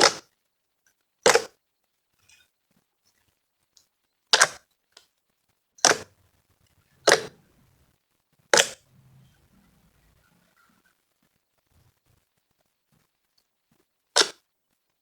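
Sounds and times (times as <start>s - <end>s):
slime crackling pops: 14.2s - 14.4s.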